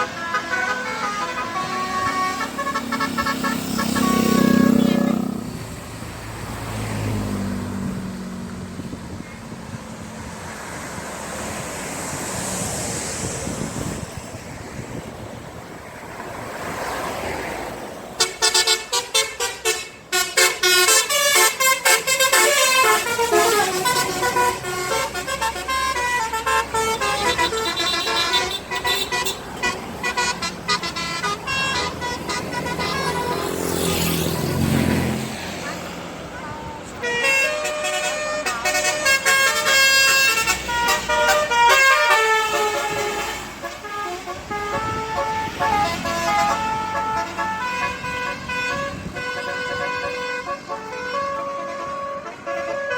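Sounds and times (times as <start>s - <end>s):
bus horn playing melody: 0.0s - 5.8s, 18.1s - 52.9s
road traffic passing: 0.0s - 52.9s.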